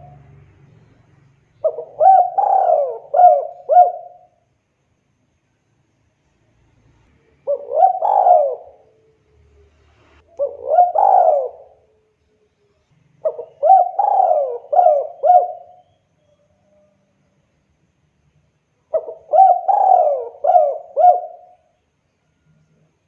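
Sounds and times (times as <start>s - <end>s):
dove cooing: 0.0s - 0.3s, 1.6s - 4.4s, 7.4s - 9.0s, 10.3s - 12.0s, 13.2s - 15.9s, 18.9s - 21.8s.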